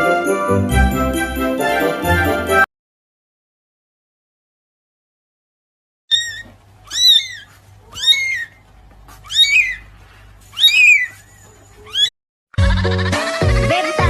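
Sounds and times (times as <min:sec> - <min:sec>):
kitten meowing: 0:06.1 - 0:08.6, 0:09.2 - 0:09.8, 0:10.5 - 0:11.2, 0:11.8 - 0:12.1.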